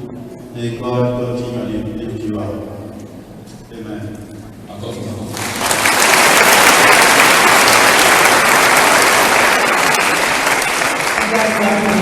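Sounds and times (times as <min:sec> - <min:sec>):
congregation applauding: 0:05.3 - 0:12.0.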